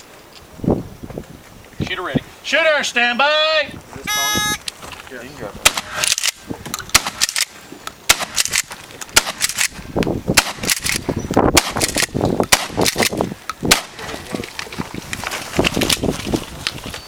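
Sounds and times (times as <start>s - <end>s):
shotgun shots: 5.6s - 7.5s, 8.1s - 9.8s, 10.4s - 11.0s, 11.6s - 14.0s.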